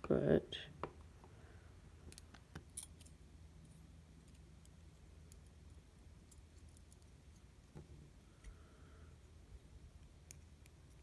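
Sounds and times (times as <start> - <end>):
faint ticks of small parts: 2.1 - 7.5.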